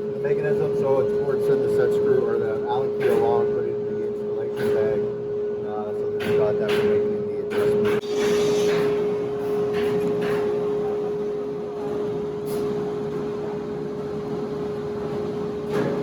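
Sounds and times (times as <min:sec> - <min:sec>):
steady mechanical hum: 0:00.0 - 0:16.0.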